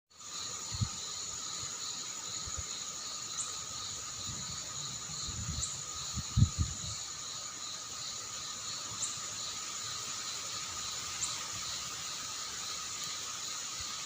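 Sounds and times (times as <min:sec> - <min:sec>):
crickets and insects trilling: 0:00.1 - 0:14.0
low wind gusts rumbling: 0:04.1 - 0:07.0.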